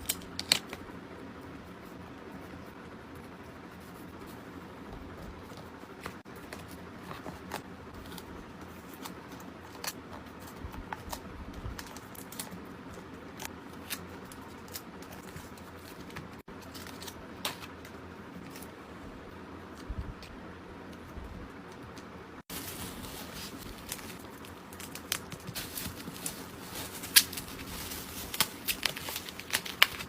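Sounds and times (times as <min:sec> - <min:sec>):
plastic sleeves and paper crinkling: 0:22.5 - 0:30.0.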